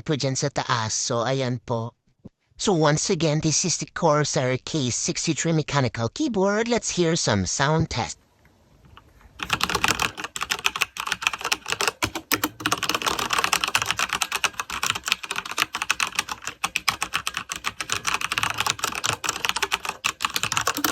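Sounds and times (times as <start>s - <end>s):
fast mechanical keyboard typing: 9.0s - 20.9s.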